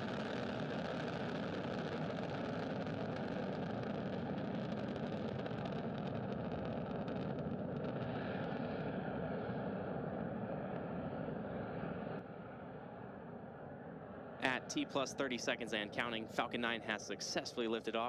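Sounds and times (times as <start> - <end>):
rocket engines rumbling: 14.2 - 18.0
crackling: 14.4 - 18.0.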